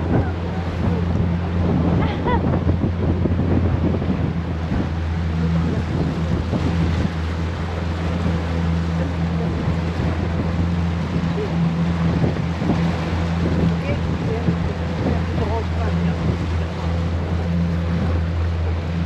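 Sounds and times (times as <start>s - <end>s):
boat engine droning: 0.0s - 19.0s
water around hull: 0.0s - 19.0s
wind on microphone: 0.0s - 19.0s.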